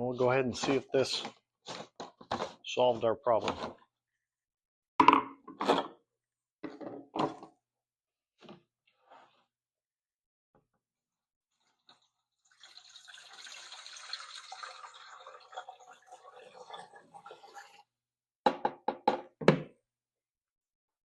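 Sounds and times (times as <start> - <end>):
water running into plastic tank: 11.5 - 17.9.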